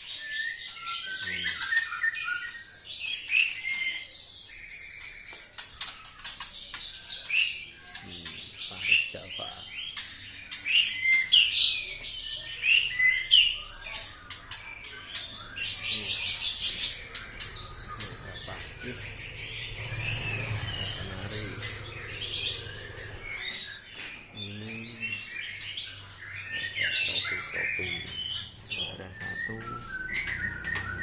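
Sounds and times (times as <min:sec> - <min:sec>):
songbirds chirping and singing: 0:00.0 - 0:31.0
fast high bird trill: 0:13.2 - 0:23.9.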